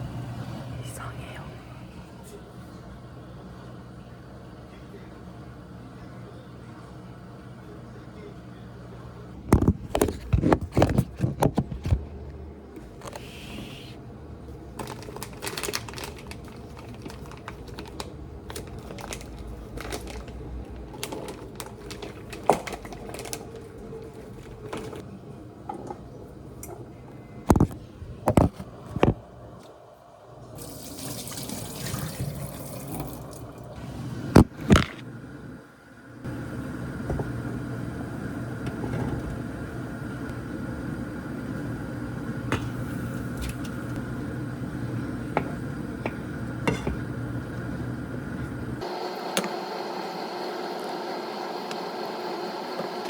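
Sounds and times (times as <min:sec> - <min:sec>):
water pouring: 0:30.4 - 0:33.8
cookware and utensils clinking: 0:45.4 - 0:47.1.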